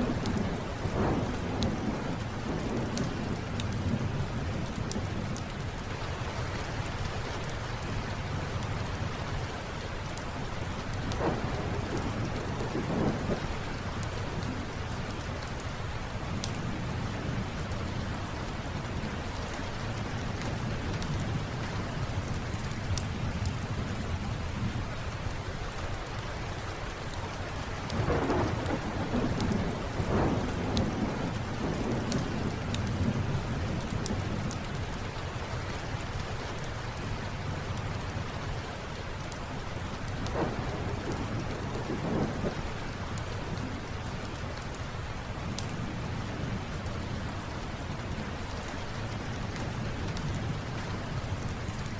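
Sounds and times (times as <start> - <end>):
thunder rumbling: 0.0 - 5.8, 10.4 - 19.2, 27.9 - 35.0, 39.8 - 48.5
steady rain: 0.0 - 51.9.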